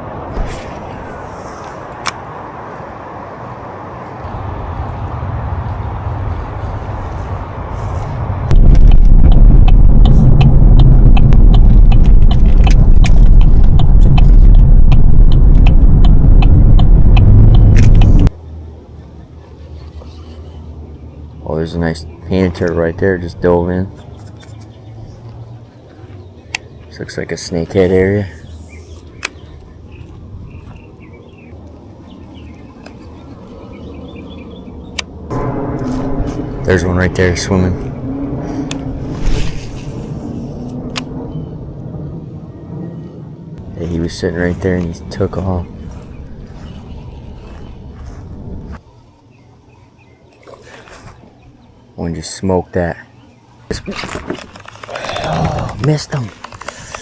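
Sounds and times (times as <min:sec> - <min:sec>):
microphone wind rumble: 0:04.2 - 0:18.4, 0:29.4 - 0:31.2, 0:33.1 - 0:48.8
sharp click: 0:08.5 - 0:18.3
small clicks and rustles: 0:53.9 - 0:57.0.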